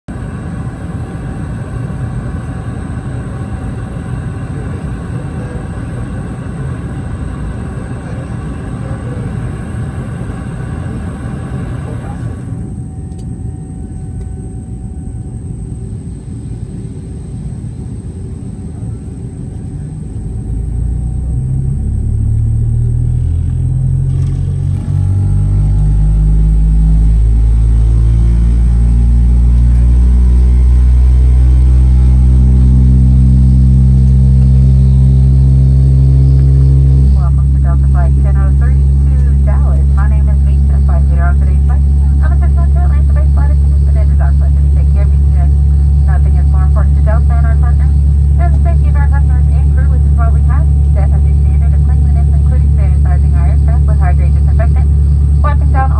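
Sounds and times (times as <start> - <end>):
jet engine spooling up: 0.2 - 13.4, 16.0 - 37.6.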